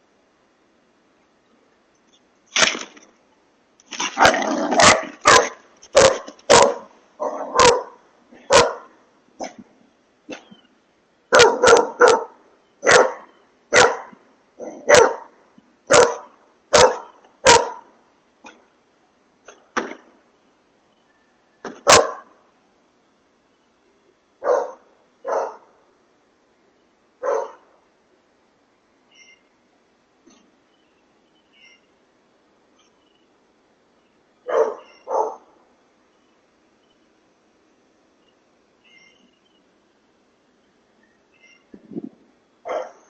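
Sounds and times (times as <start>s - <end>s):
dog barking: 4.2s - 9.6s, 11.3s - 17.9s, 21.8s - 22.3s, 24.4s - 25.7s, 27.2s - 27.7s, 34.5s - 35.5s, 42.7s - 43.0s
faint dog barks: 4.8s - 9.6s, 11.3s - 17.9s, 21.8s - 22.4s, 24.4s - 25.8s, 27.2s - 27.7s, 34.5s - 35.5s, 42.7s - 43.0s.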